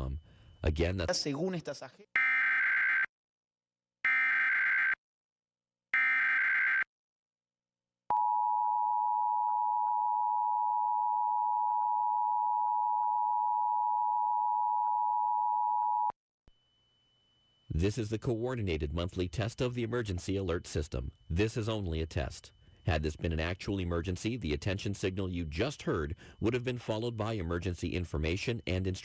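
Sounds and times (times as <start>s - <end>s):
data tone bursts: 16.5s - 29.0s.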